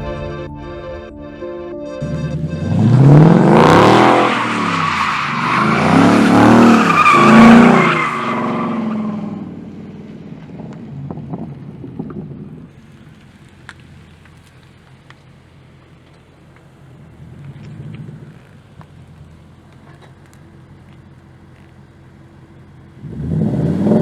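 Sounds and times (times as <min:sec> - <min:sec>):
car engine revving hard: 0:02.0 - 0:12.7, 0:23.0 - 0:24.0
tires squealing: 0:02.0 - 0:24.0.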